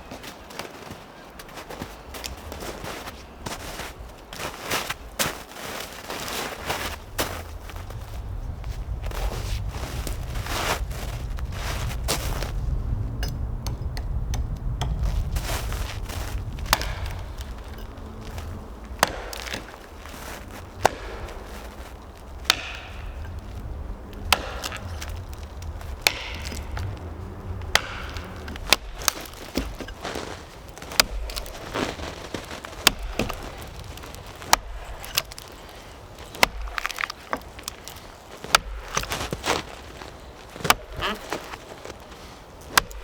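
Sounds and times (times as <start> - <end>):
axe chopping wood: 13.2 - 42.0, 42.7 - 43.0.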